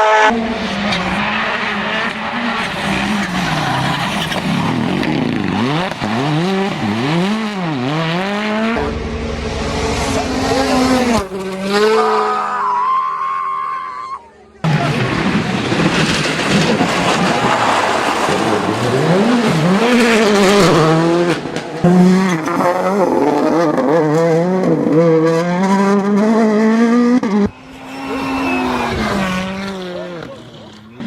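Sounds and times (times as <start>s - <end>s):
rally car engine at full throttle: 0.0s - 13.0s, 14.3s - 31.0s
engine winding down: 3.2s - 12.7s
heavy rushing noise: 8.4s - 12.8s, 14.6s - 22.3s.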